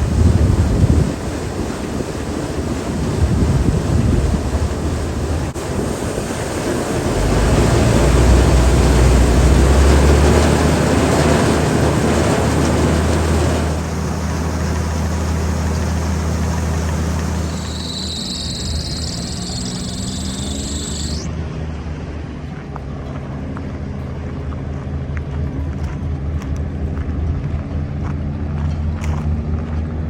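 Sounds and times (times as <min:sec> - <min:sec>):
wind noise on microphone: 0:00.0 - 0:21.3
heavy engine running: 0:00.0 - 0:30.0.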